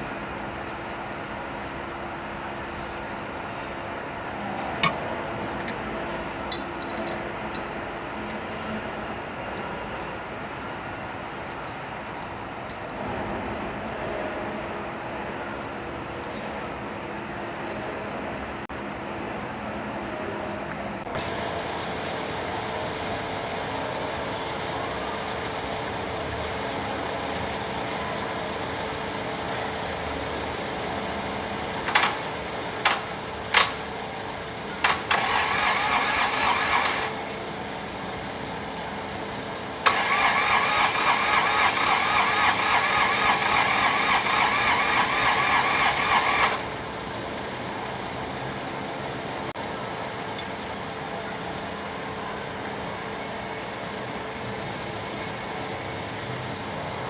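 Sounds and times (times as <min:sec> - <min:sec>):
diesel engine cranking: 0:31.8 - 0:34.1, 0:34.7 - 0:37.3, 0:39.8 - 0:46.8.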